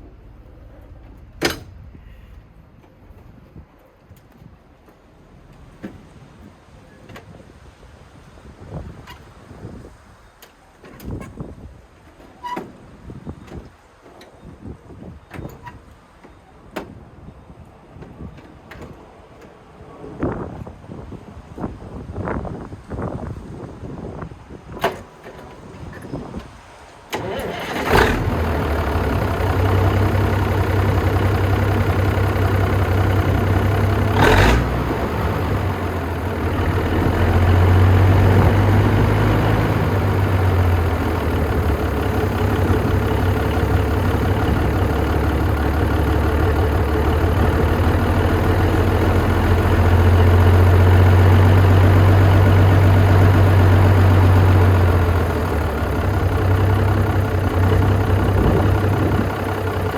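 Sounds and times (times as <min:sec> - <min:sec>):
diesel engine idling: 0:26.5 - 0:59.9.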